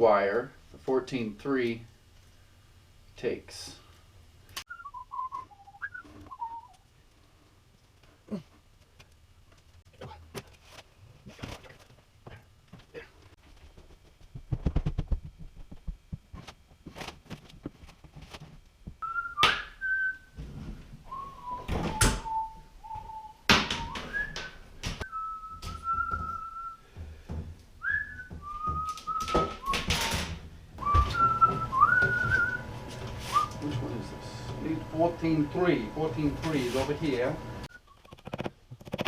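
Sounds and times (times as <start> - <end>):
person whistling a tune: 4.7 - 6.7, 19.0 - 20.3, 21.1 - 26.8, 27.8 - 29.8, 30.8 - 32.6.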